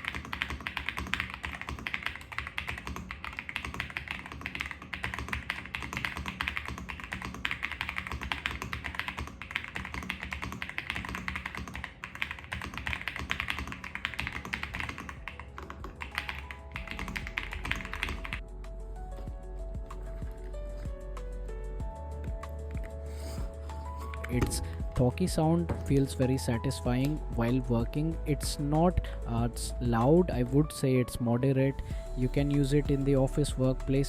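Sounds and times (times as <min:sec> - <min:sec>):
fast mechanical keyboard typing: 0:00.0 - 0:18.4
background music: 0:00.0 - 0:34.0.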